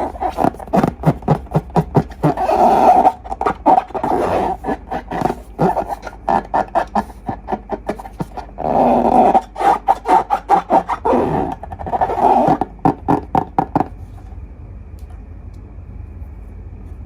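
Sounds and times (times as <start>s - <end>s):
slime blurts: 0.0s - 13.2s
wet slime squelches and squeaks: 0.0s - 13.8s.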